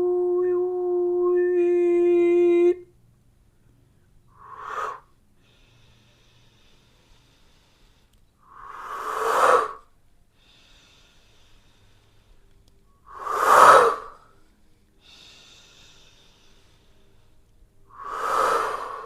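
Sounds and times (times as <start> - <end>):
person blowing out breaths: 15.0 - 19.0.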